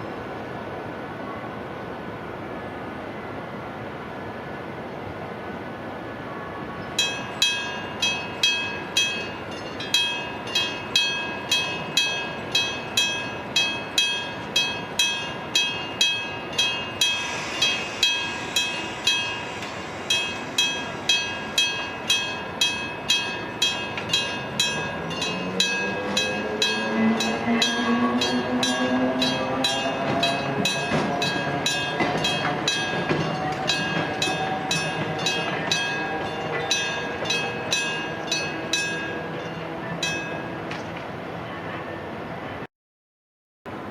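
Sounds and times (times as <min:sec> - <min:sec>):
level-crossing bell ringing: 0:07.0 - 0:40.5
train motor whine: 0:16.6 - 0:22.7.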